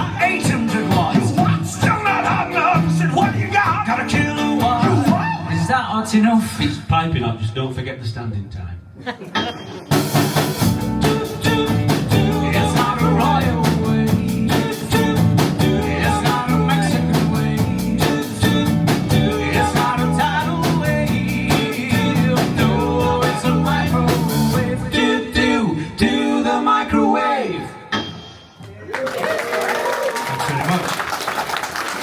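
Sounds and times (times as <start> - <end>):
live rock band playing: 0.0 - 5.7, 9.2 - 25.2.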